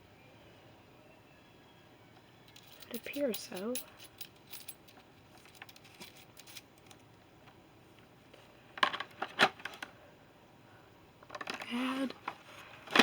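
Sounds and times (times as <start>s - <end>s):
small tools clicking and clattering: 2.5s - 7.1s.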